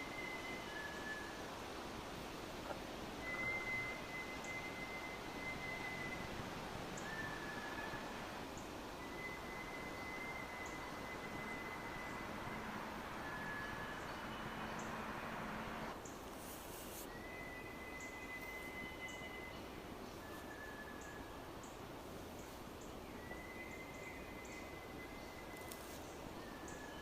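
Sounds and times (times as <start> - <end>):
steady background hiss: 0.0 - 27.0
high whistling: 3.2 - 6.4, 9.0 - 15.9.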